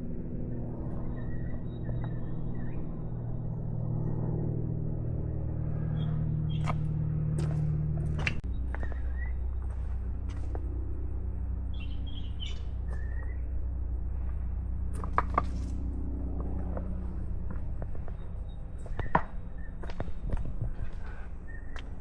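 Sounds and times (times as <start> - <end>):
steady low rumble: 0.0 - 22.0
bird chirps: 5.9 - 6.8, 11.7 - 13.5.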